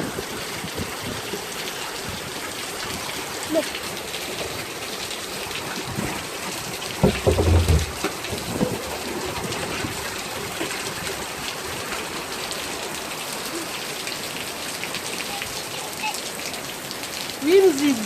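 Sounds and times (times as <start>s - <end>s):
rain pattering: 0.0s - 18.0s.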